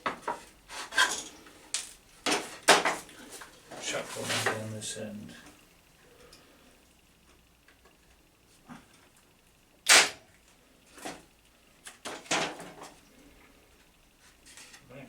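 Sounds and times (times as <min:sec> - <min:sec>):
electric nailer firing: 0:09.8 - 0:10.2.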